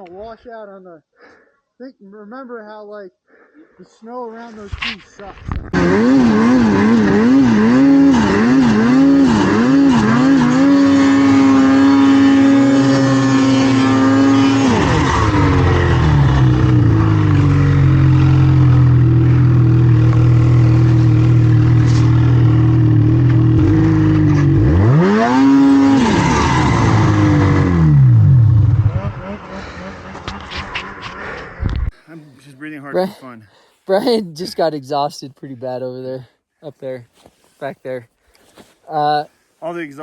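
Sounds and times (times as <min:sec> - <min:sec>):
snowmobile engine revving: 0:05.7 - 0:31.6.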